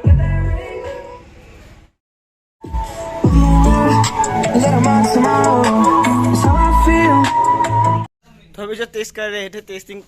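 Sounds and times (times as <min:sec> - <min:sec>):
song over loudspeakers: 0:02.6 - 0:08.1.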